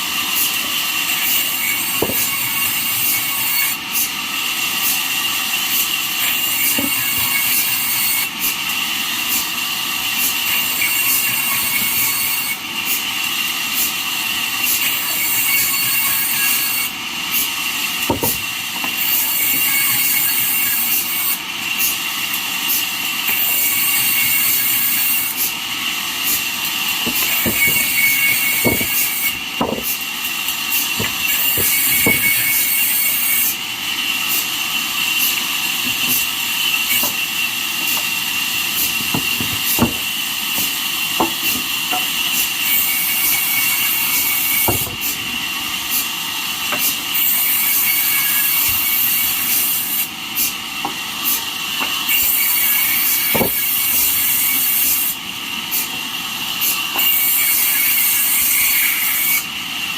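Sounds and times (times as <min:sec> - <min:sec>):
band saw cutting wood: 0:00.0 - 0:56.0, 0:56.6 - 0:59.5.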